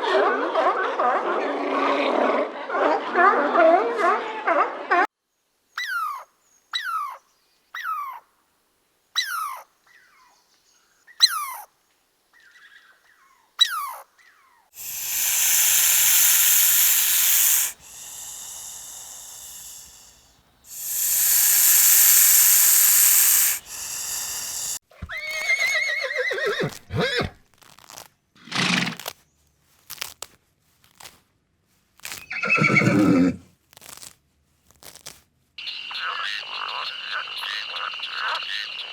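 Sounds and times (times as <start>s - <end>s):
high falling animal chirps: 14.8s - 20.1s, 20.7s - 24.8s
long breathy animal blasts: 14.8s - 24.8s
horses whinnying: 25.1s - 27.3s, 32.3s - 33.4s.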